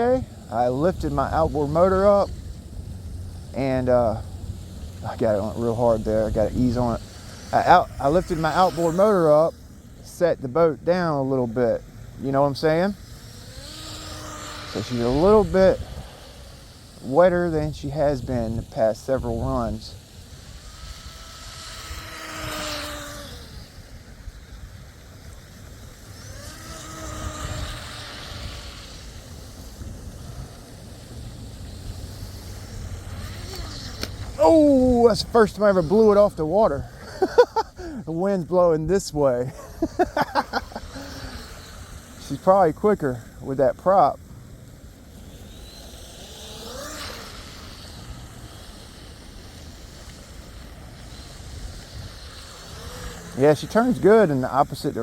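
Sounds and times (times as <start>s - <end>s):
steady low rumble: 0.0s - 46.4s
boat electric motor whining: 0.0s - 55.0s.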